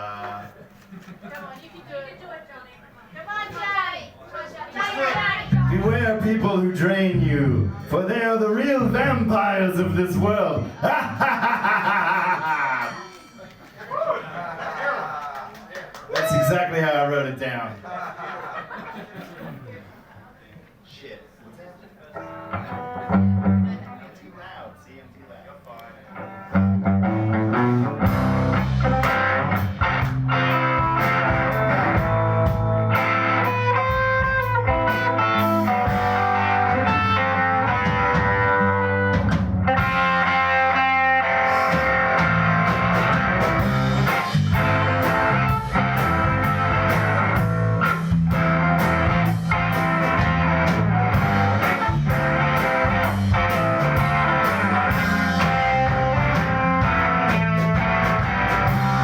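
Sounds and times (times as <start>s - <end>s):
live rock band playing: 5.1s - 13.8s, 22.2s - 23.9s, 26.2s - 59.0s.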